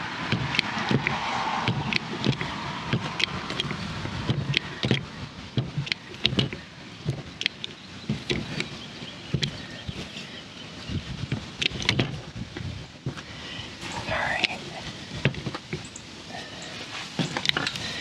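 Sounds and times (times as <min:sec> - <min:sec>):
hand crimper clicking and clunking: 0:01.8 - 0:08.7.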